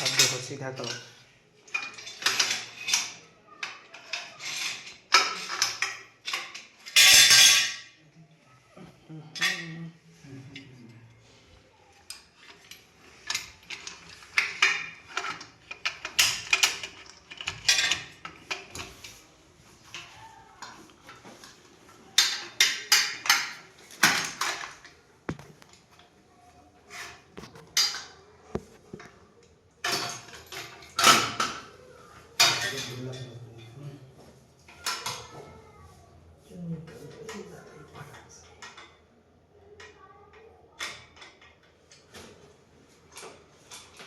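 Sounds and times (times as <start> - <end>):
metal parts clanking: 0.0 - 7.9, 12.1 - 19.2, 22.1 - 26.0, 26.9 - 28.6, 29.8 - 31.7, 32.4 - 33.3.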